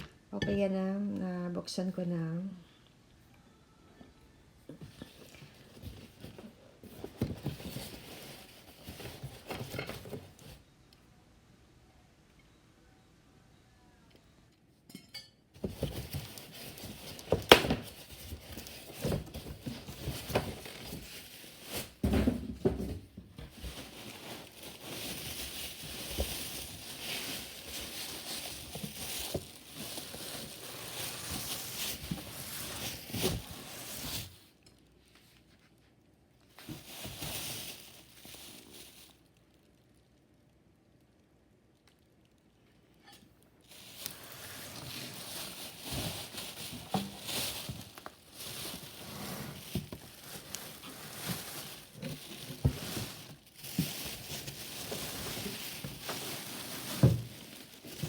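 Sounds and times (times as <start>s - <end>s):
packaging rustling and scraping: 4.8s - 10.6s, 15.6s - 34.6s, 36.5s - 39.3s, 43.6s - 58.0s.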